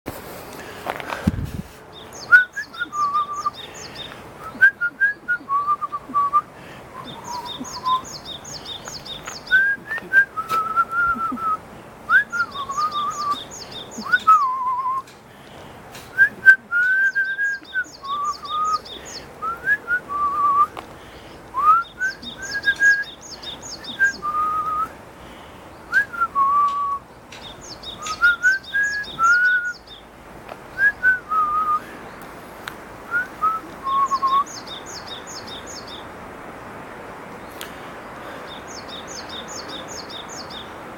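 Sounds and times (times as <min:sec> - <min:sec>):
bird chirping high: 0:01.9 - 0:04.2, 0:07.0 - 0:11.4, 0:12.1 - 0:15.0, 0:16.8 - 0:19.3, 0:21.6 - 0:24.4, 0:27.3 - 0:30.1, 0:33.9 - 0:36.1, 0:38.4 - 0:40.8.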